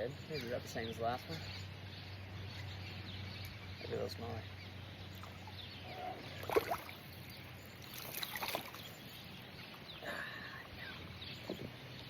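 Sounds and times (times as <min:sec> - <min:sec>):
water splashing and sloshing: 0:05.0 - 0:09.9.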